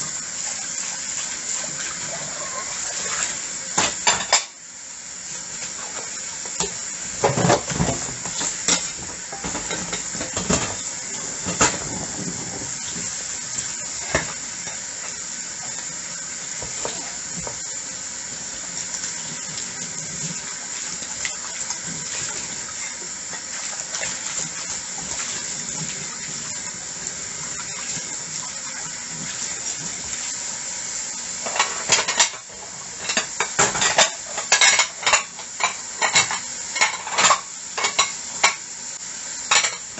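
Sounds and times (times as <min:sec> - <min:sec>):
tap water running: 0:00.0 - 0:39.9
dishes clinking: 0:03.8 - 0:04.6, 0:07.2 - 0:10.8, 0:11.4 - 0:12.6, 0:31.4 - 0:38.6, 0:39.5 - 0:39.9.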